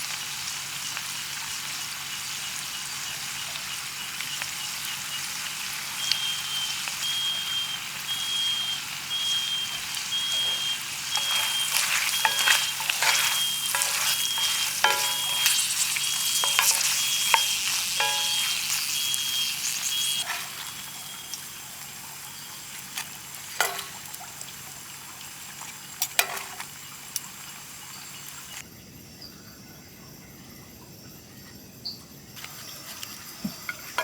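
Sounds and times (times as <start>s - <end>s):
shrimp sizzling in a pan: 0.0s - 28.6s.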